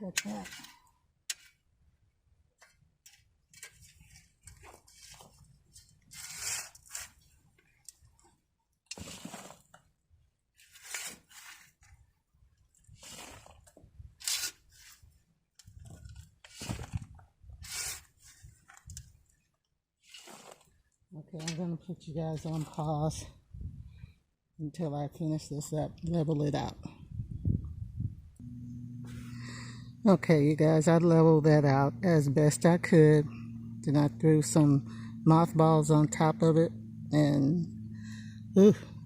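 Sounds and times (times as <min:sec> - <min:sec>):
crunching and scraping in rocky dirt: 0:02.6 - 0:23.5.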